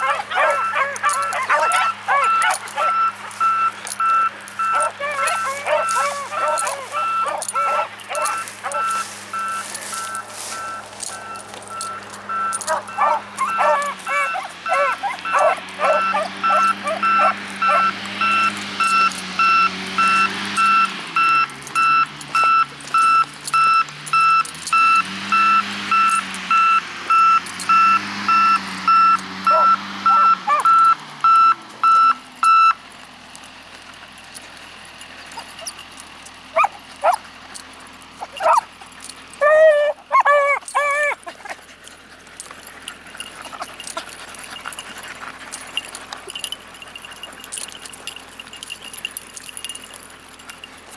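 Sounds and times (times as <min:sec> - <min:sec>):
dogs barking and baying: 0:00.0 - 0:50.9
machine engine: 0:00.0 - 0:50.9
reversing alarm beeping: 0:00.3 - 0:32.8.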